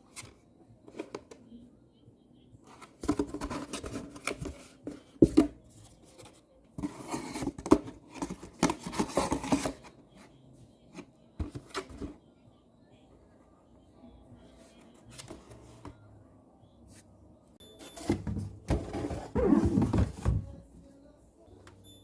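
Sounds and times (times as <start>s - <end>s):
paper box rustling and crinkling: 18.0s - 20.7s.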